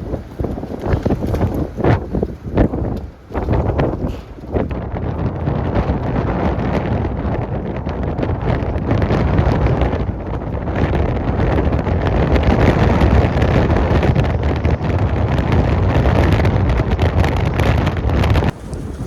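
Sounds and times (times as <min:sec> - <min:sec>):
strong wind buffeting microphone: 0:00.0 - 0:19.0.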